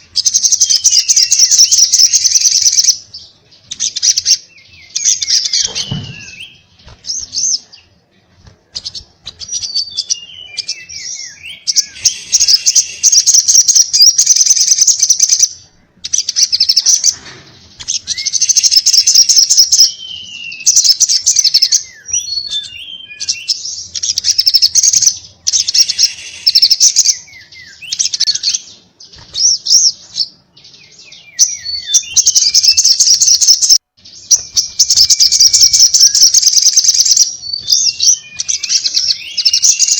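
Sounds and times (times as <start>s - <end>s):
bird whistling falling notes: 4.6s - 7.6s, 9.3s - 15.3s, 17.8s - 23.5s, 34.1s - 39.9s
bird chattering rapidly: 8.8s - 15.5s, 31.6s - 39.9s.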